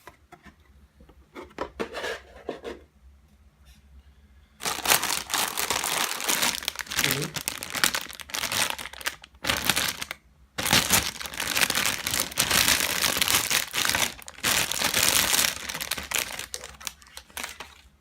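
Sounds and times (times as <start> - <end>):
plastic packaging crinkling: 4.6 - 18.0.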